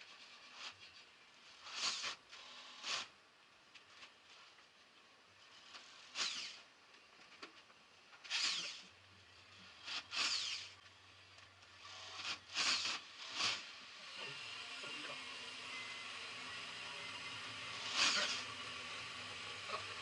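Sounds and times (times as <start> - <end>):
power tool whining: 5.7 - 6.7, 8.2 - 8.9, 9.8 - 10.8, 11.8 - 20.0.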